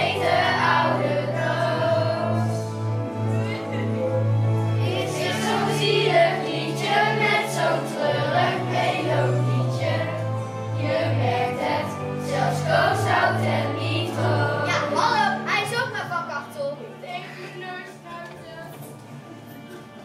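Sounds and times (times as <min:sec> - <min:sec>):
children's choir singing: 0:00.0 - 0:15.5
instrumental accompaniment with bass: 0:00.0 - 0:17.8.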